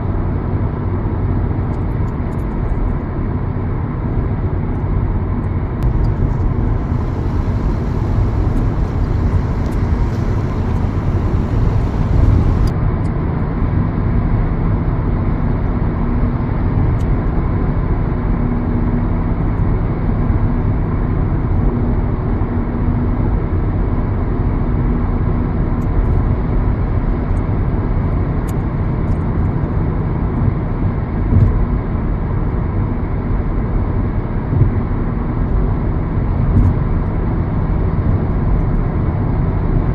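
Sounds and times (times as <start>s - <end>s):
road noise: 5.8s - 12.7s
vehicle engine hum: 5.8s - 12.7s.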